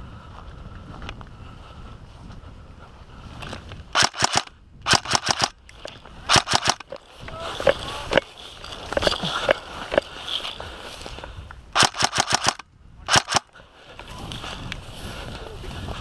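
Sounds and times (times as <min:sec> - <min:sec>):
airsoft guns firing: 0:04.0 - 0:05.6, 0:06.3 - 0:07.0, 0:11.8 - 0:13.5.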